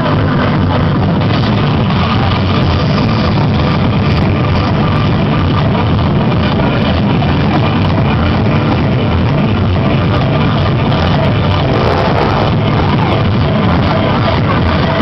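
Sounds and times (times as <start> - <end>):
loud electronic dance music: 9.1 - 15.0.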